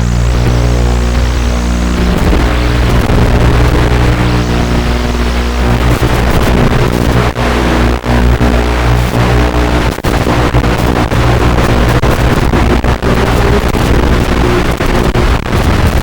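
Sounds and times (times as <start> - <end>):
loud music with low tones: 0.0 - 16.0.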